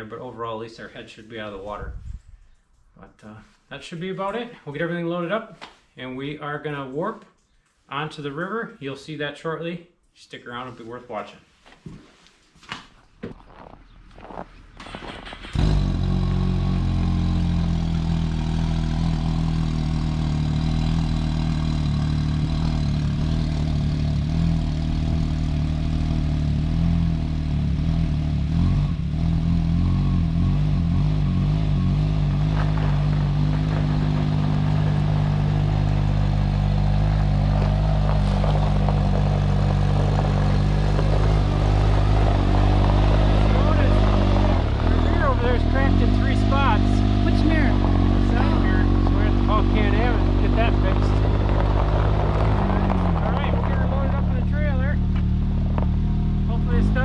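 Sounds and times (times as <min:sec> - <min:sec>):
vehicle engine running: 0:14.3 - 0:57.0.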